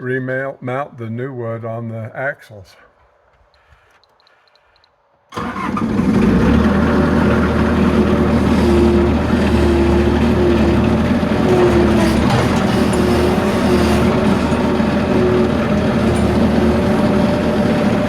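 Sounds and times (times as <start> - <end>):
machine motor humming: 5.4 - 18.0.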